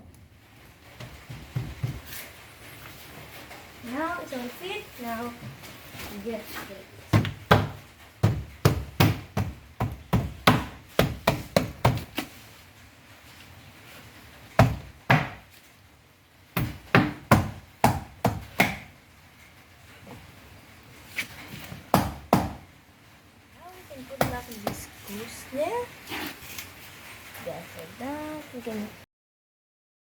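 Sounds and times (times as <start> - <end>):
sharp knocks on door panel: 7.1 - 12.1, 14.6 - 15.4, 16.6 - 18.9, 21.9 - 22.6.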